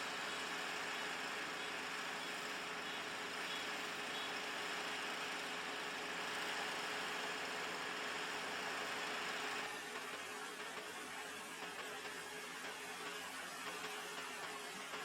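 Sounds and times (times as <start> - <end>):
combine harvester engine drone: 0.0 - 15.0.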